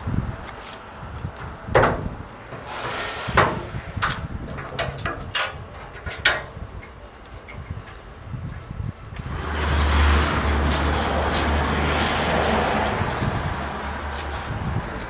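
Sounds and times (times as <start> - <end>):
irregular knocks and bangs: 1.7 - 6.4.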